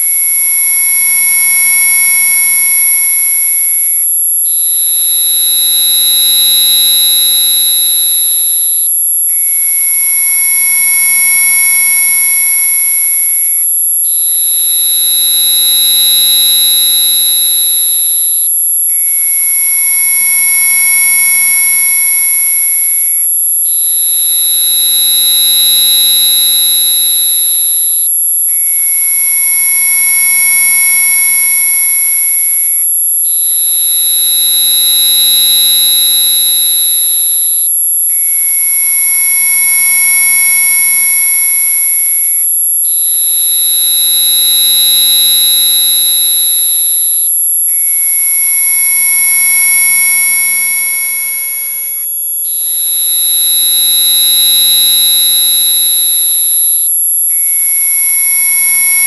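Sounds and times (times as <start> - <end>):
piercing high-pitched tone: 47.7 - 56.6
steady electronic tones: 48.9 - 55.0.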